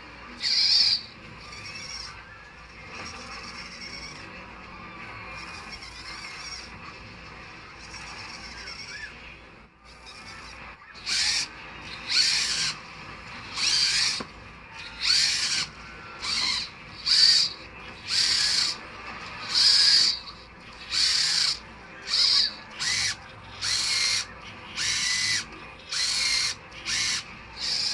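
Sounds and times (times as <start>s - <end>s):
servo motors whining: 9.9s - 27.9s.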